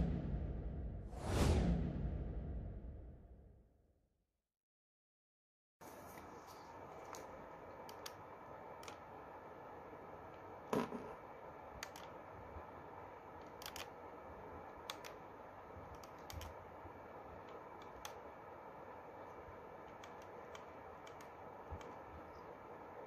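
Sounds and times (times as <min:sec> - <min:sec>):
faint steady hiss: 0:05.8 - 0:23.0
small clicks: 0:07.0 - 0:08.2, 0:08.8 - 0:09.1, 0:11.8 - 0:12.2, 0:13.4 - 0:14.0, 0:14.8 - 0:15.2, 0:15.9 - 0:16.6, 0:17.4 - 0:18.2, 0:19.8 - 0:22.3.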